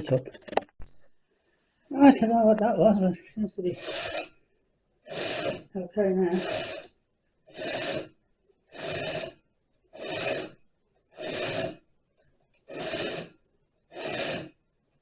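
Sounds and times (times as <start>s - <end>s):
heavy breathing: 3.6s - 4.4s, 5.0s - 5.7s, 6.3s - 9.4s, 10.0s - 11.8s, 12.7s - 14.6s.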